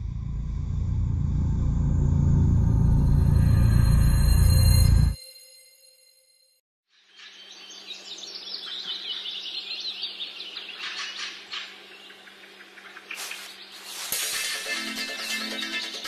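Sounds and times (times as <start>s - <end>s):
steady low hum: 0.0s - 5.2s
songbirds chirping: 6.9s - 14.1s.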